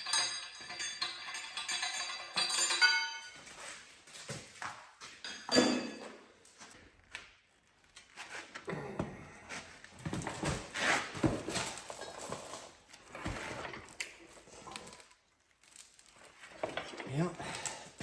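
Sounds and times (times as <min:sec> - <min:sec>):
metal parts and tools clinking: 0:00.0 - 0:04.3, 0:05.2 - 0:06.2.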